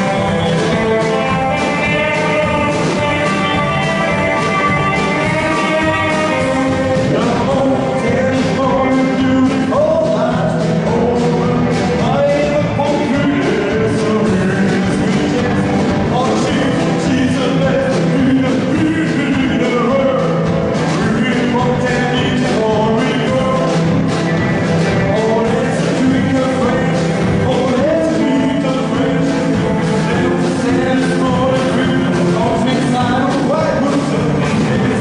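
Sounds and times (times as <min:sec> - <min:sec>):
drum beat: 0:00.0 - 0:35.0
person singing: 0:00.0 - 0:35.0
rock and roll band playing: 0:00.0 - 0:35.0.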